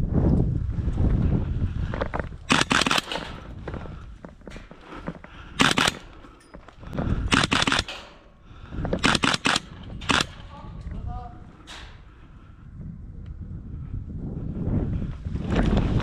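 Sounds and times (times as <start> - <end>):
airsoft gun bursts: 2.5 - 3.4, 5.6 - 6.2, 7.3 - 8.3, 9.0 - 10.5.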